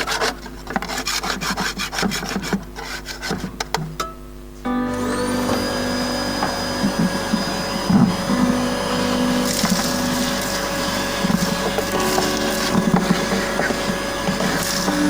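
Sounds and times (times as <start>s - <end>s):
small electric motor running: 4.9s - 15.0s
scraping and crackling limescale: 5.0s - 15.0s.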